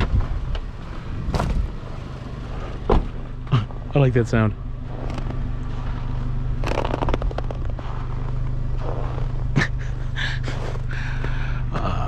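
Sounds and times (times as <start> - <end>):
vehicle engine idling: 0.0 - 12.0
rattling scraping clicks: 4.9 - 6.0, 6.6 - 8.2.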